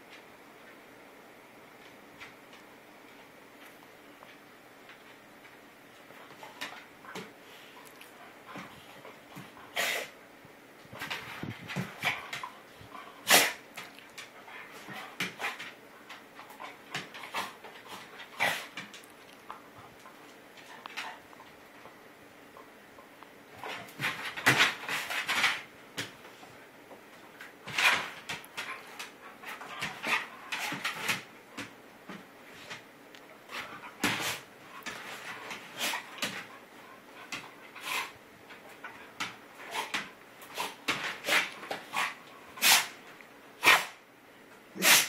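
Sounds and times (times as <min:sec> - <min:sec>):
dog making sharp vocal sounds: 0:44.8 - 0:45.0.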